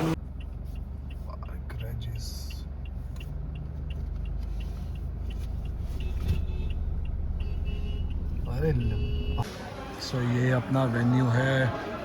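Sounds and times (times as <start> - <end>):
engine and road rumble: 0.0 - 12.0
light ticking: 0.2 - 8.6.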